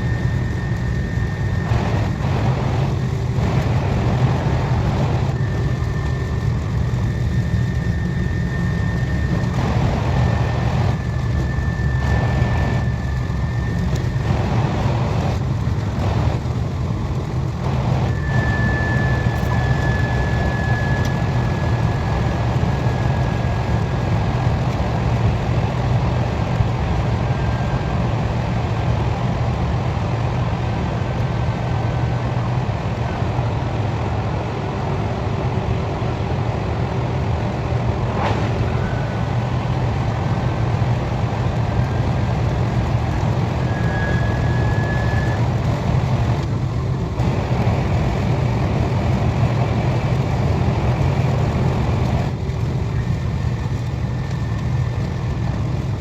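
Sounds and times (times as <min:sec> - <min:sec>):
train interior rumble: 0:00.0 - 0:56.0
faint high whistling: 0:18.0 - 0:21.7, 0:43.6 - 0:45.4.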